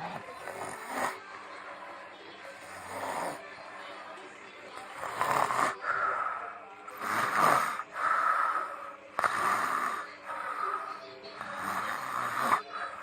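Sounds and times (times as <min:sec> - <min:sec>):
person snoring: 0:00.0 - 0:01.2, 0:02.6 - 0:03.4, 0:04.9 - 0:13.0.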